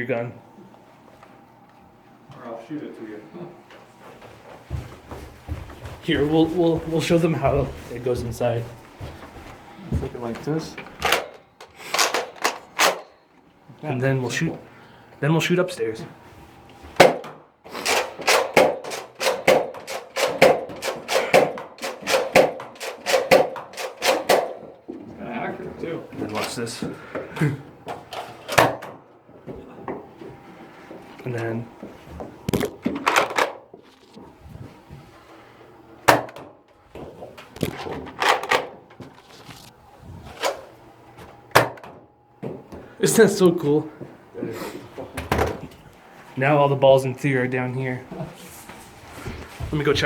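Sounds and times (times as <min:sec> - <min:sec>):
foam balls smacking hard surfaces: 0:17.0 - 0:17.4, 0:18.2 - 0:24.7.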